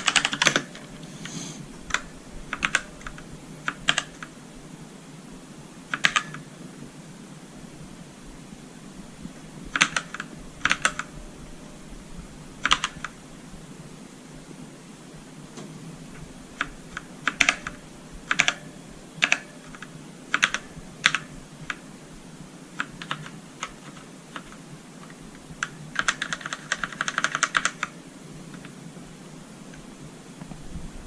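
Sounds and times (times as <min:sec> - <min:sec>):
mechanical keyboard typing: 0:00.0 - 0:04.3, 0:05.9 - 0:06.5, 0:09.7 - 0:11.1, 0:12.6 - 0:13.2, 0:16.6 - 0:21.8, 0:22.8 - 0:28.7.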